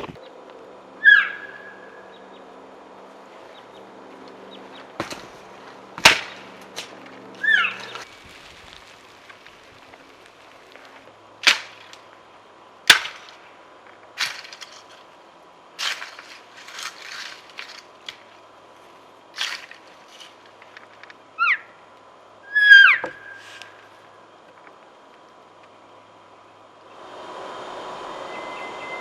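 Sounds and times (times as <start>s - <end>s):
branches cracking and snapping: 4.3s - 12.2s, 12.9s - 13.5s, 14.1s - 15.1s, 15.8s - 18.5s, 19.3s - 21.2s.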